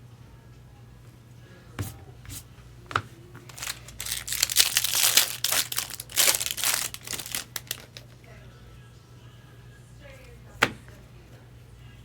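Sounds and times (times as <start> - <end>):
foil wrapper crinkling: 3.4 - 8.2.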